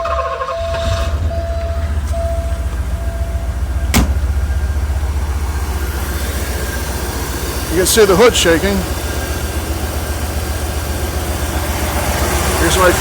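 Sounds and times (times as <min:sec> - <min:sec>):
car engine idling with misfire: 0:00.0 - 0:13.0
intermittent beeping tone: 0:00.1 - 0:08.2.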